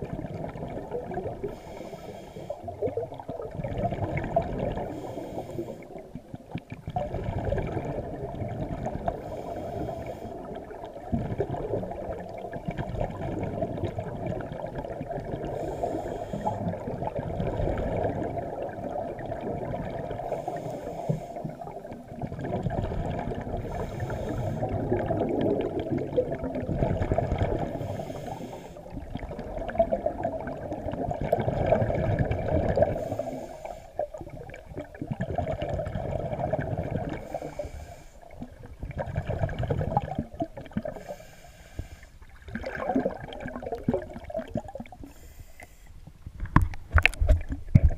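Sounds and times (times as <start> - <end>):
gurgling exhaled bubbles: 0.0 - 41.3, 42.2 - 45.2, 46.2 - 47.9
regulator hissing inhales: 1.4 - 2.6, 4.9 - 6.0, 9.2 - 10.5, 15.6 - 16.7, 20.3 - 21.6, 23.7 - 24.7, 27.8 - 28.9, 33.0 - 34.0, 37.2 - 38.3, 41.0 - 42.3, 45.0 - 46.0.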